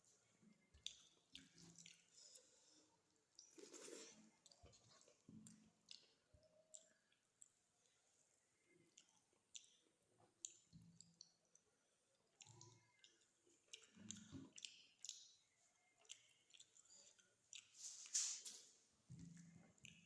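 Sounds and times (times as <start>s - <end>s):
wet mouth chewing sounds: 0.6s - 18.4s.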